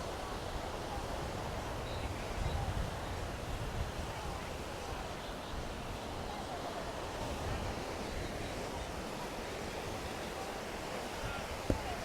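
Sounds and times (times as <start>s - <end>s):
faint distant voices: 0.0s - 12.0s
surf washing: 0.0s - 12.0s.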